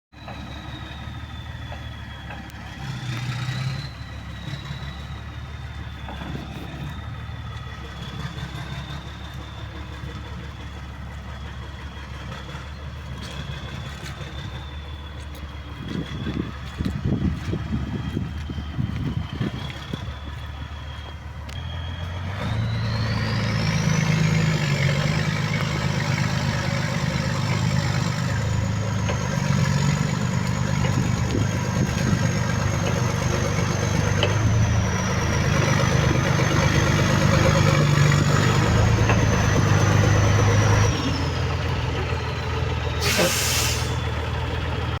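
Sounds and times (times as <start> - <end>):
heavy diesel engine revving: 0.2 - 45.0
air hiss: 43.0 - 44.0.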